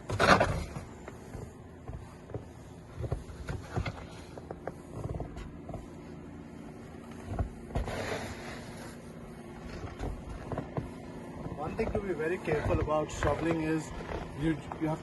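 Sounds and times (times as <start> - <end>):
low steady rumble: 0.0 - 15.0
snow shovel scraping: 7.2 - 9.0, 11.6 - 15.0.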